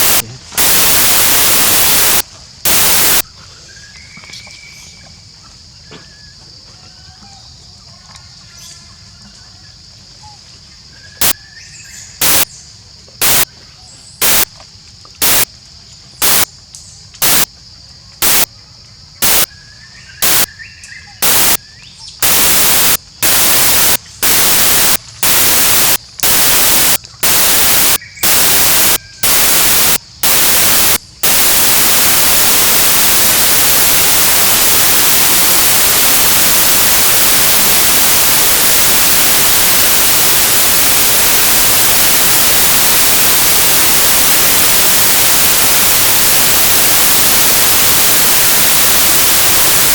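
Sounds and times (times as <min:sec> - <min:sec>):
loud static hiss: 0:00.0 - 0:03.4, 0:12.2 - 0:12.5, 0:13.2 - 0:13.5, 0:14.2 - 0:14.6, 0:15.2 - 0:15.6, 0:16.2 - 0:16.6, 0:17.2 - 0:17.5, 0:18.2 - 0:18.5, 0:19.2 - 0:19.5, 0:20.2 - 0:20.6, 0:21.2 - 0:21.6, 0:22.2 - 0:49.9
outdoor ambience: 0:00.0 - 0:49.9
steady high tone: 0:18.2 - 0:18.5, 0:19.2 - 0:19.5, 0:20.2 - 0:20.5, 0:21.2 - 0:21.6, 0:22.2 - 0:49.9.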